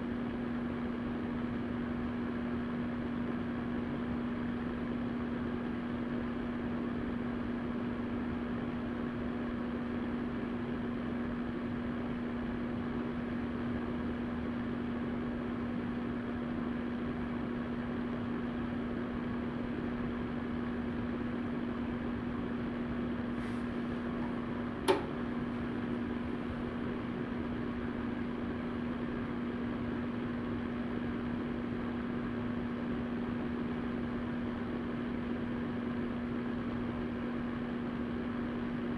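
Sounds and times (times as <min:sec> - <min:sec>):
fan heater running: 0:00.0 - 0:38.9
sharp click: 0:24.8 - 0:25.2.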